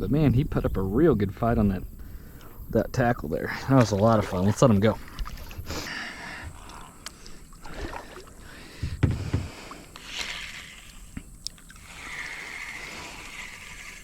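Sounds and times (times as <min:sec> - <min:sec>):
water sloshing: 0:03.7 - 0:05.7, 0:06.4 - 0:14.0
loud thump: 0:08.8 - 0:09.5
scattered knocks: 0:08.8 - 0:09.5.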